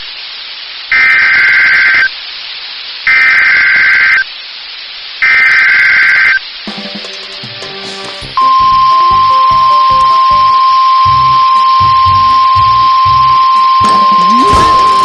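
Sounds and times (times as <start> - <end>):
radio hiss: 0.0 - 6.6.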